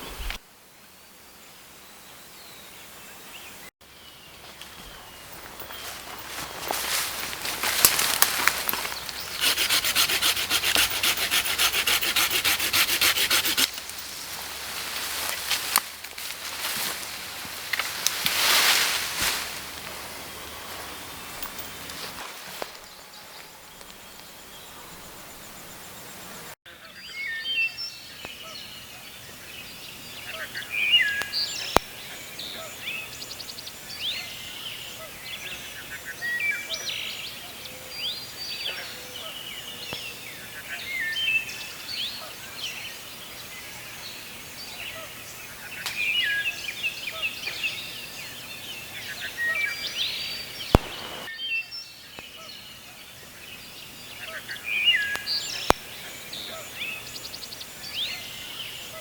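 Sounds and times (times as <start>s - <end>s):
outdoor background hiss: 0.0s - 59.0s
wild birds chirping and singing: 1.6s - 14.8s, 19.8s - 59.0s
sharp clicks: 50.8s - 51.3s.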